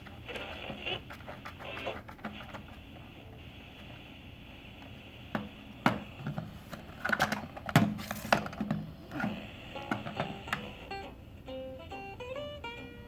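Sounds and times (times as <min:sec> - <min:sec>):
music from radio: 0:00.0 - 0:02.8, 0:08.3 - 0:13.0
radio clicks: 0:00.0 - 0:02.8
broken snatches of radio stations: 0:00.0 - 0:04.1
radio static hiss: 0:00.0 - 0:07.6, 0:08.2 - 0:11.0.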